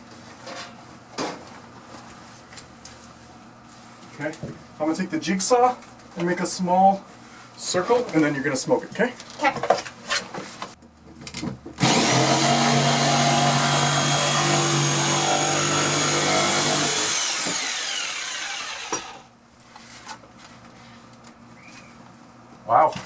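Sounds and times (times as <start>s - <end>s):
jigsaw cutting: 11.8s - 19.3s.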